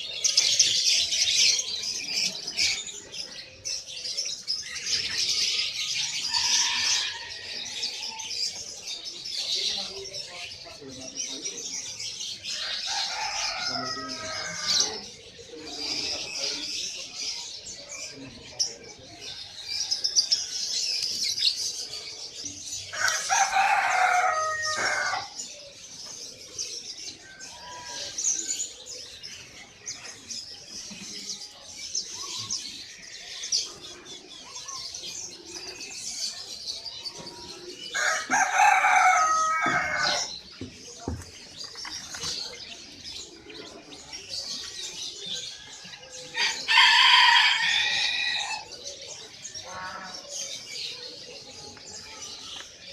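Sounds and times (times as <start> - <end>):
songbirds chirping: 0.0 - 52.9
rooster crowing: 12.6 - 15.0, 22.9 - 25.3, 37.9 - 40.3, 46.3 - 48.6.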